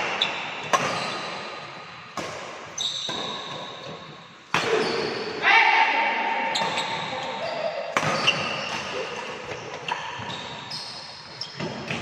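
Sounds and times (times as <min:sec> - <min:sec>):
racket striking shuttlecock: 0:00.0 - 0:05.1, 0:07.9 - 0:10.3
shoe squeaks: 0:00.2 - 0:01.7, 0:02.8 - 0:05.3, 0:06.5 - 0:12.0.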